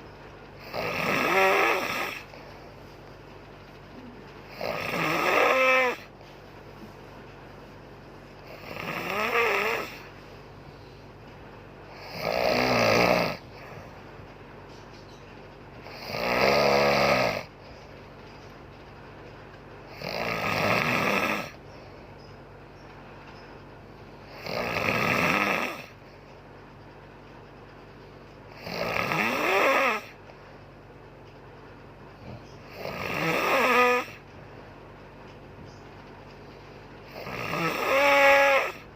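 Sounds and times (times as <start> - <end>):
steady low hum: 0.0 - 38.9
woman snoring loudly: 0.6 - 2.3, 4.5 - 6.1, 8.5 - 10.1, 11.9 - 13.6, 15.8 - 17.5, 19.9 - 21.6, 24.3 - 26.0, 28.6 - 30.2, 32.7 - 34.2, 37.1 - 38.9.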